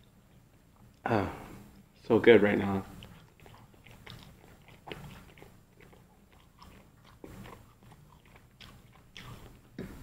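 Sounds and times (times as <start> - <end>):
person chewing food: 2.9 - 10.0
wet mouth clicks: 2.9 - 10.0.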